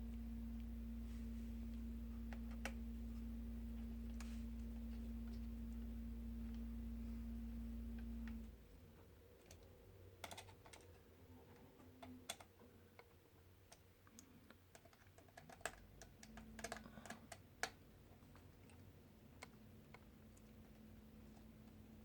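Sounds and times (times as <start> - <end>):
low hum: 0.0 - 9.0
small parts clicking and tapping: 9.4 - 21.8.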